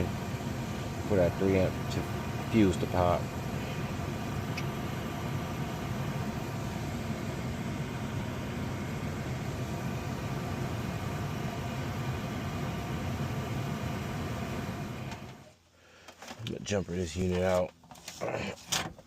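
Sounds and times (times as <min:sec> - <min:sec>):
air conditioning unit running: 0:00.0 - 0:15.5.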